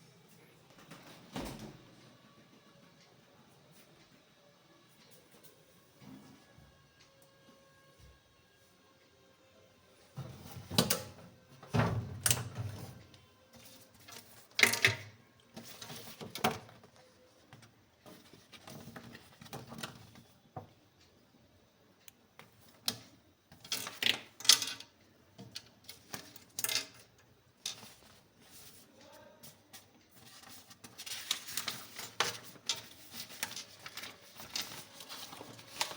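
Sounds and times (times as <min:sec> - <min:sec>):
handling rustling and scraping: 0:12.4 - 0:20.4, 0:25.4 - 0:35.9.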